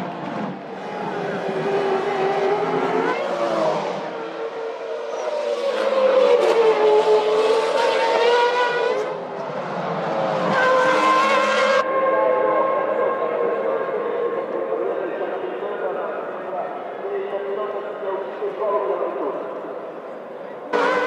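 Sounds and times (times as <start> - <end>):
racing car engines passing: 0.0 - 15.6, 20.7 - 21.0.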